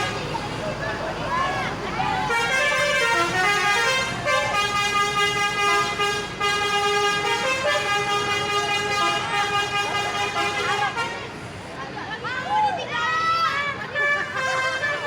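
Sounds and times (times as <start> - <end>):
bus musical horn tune: 0.0 - 11.5, 14.0 - 15.0.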